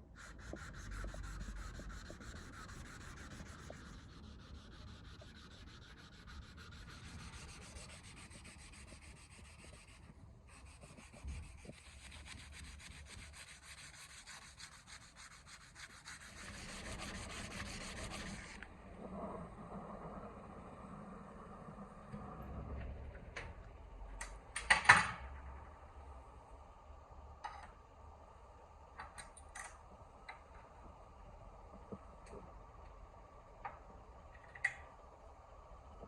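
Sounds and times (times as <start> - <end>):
sanding on a steel blade: 0.2 - 18.6.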